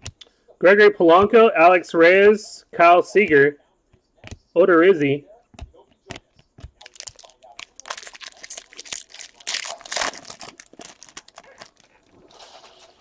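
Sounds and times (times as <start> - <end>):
foil wrapper tearing and crinkling: 6.8 - 12.1.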